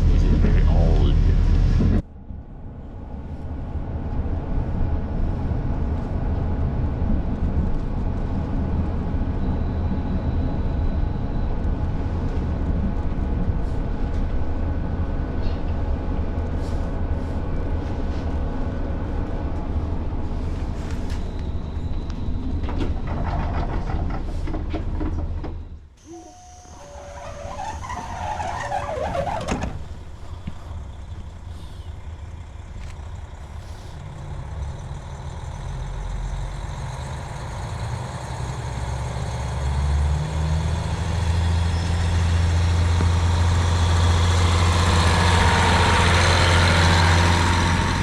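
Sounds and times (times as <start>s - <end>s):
diesel railcar rumbling on rails: 0.0s - 48.0s
faint whining tones: 9.2s - 36.6s.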